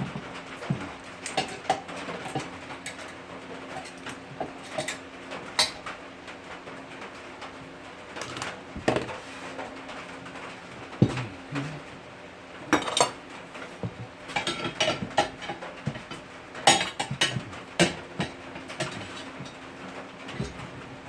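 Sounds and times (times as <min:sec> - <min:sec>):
metal tools clanking: 0:12.8 - 0:13.2, 0:14.3 - 0:19.7.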